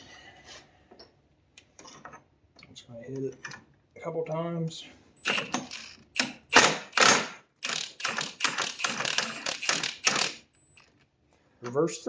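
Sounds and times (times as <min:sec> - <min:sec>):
impact gun hammering: 0:05.3 - 0:07.4.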